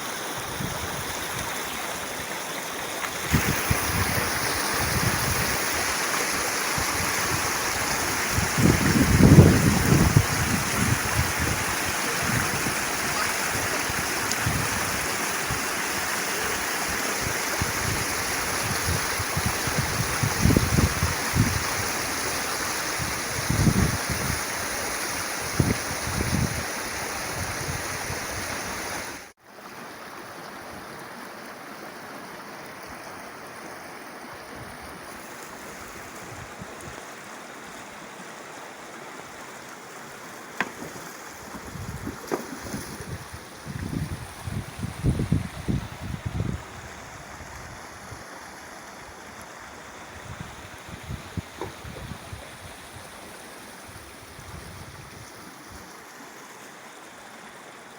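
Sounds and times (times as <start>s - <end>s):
flowing water rushing: 0.0s - 57.9s
wind buffeting microphone: 3.2s - 5.9s, 6.7s - 15.6s, 17.2s - 22.0s, 40.8s - 48.2s, 50.0s - 53.1s.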